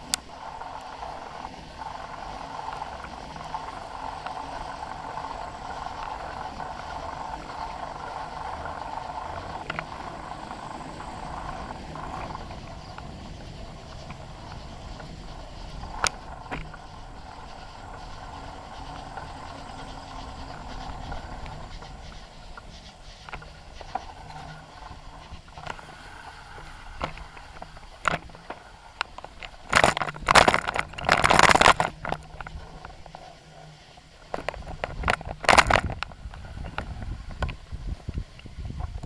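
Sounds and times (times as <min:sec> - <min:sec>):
rattling scraping clatter: 0:00.0 - 0:33.4
bicycle rolling noise: 0:00.0 - 0:39.0.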